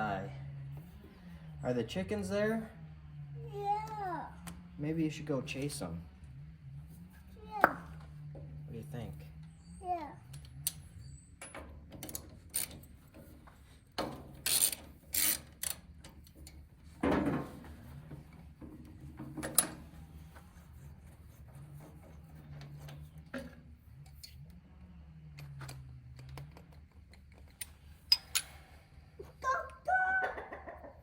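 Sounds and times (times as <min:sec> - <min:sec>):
ratchet clicking: 0:12.0 - 0:13.0, 0:14.4 - 0:16.6, 0:27.1 - 0:28.6.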